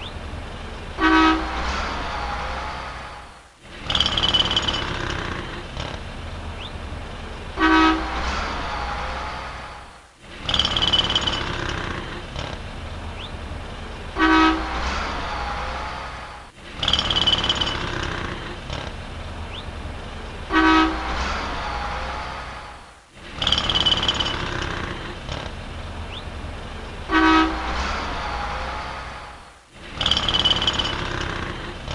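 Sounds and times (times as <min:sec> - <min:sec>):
street traffic: 0:00.0 - 0:31.9
car horn honk: 0:01.0 - 0:01.9, 0:07.6 - 0:08.5, 0:14.2 - 0:14.8, 0:20.5 - 0:21.3, 0:27.1 - 0:27.9.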